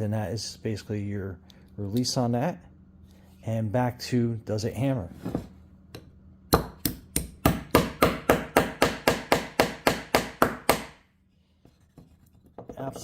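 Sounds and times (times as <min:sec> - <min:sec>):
small hammer striking: 0:06.5 - 0:11.0.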